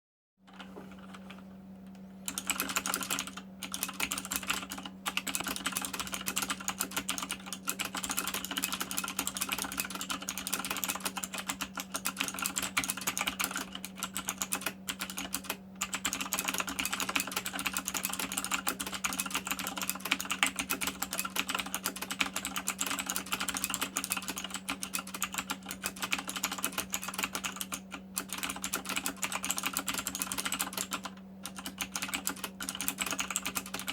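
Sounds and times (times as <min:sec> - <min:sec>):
mechanical keyboard typing: 0:02.2 - 0:33.9.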